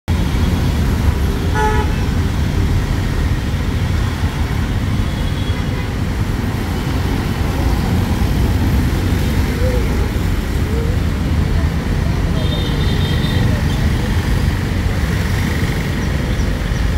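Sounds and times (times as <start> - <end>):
street traffic engines running: 0.1 - 16.9
vehicle horn honk: 1.5 - 2.1.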